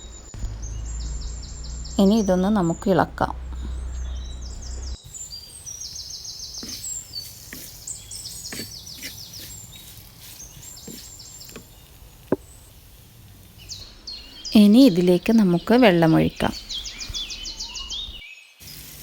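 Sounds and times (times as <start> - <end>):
birds chirping: 0.0 - 19.0
spoon scraping and knocking a pan: 6.5 - 12.8.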